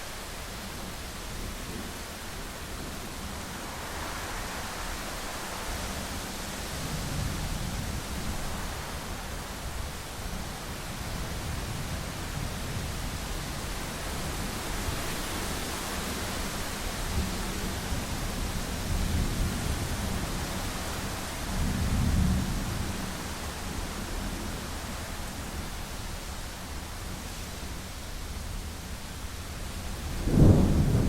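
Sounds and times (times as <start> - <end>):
rain hiss: 0.0 - 31.0
rolling thunder: 30.0 - 31.0.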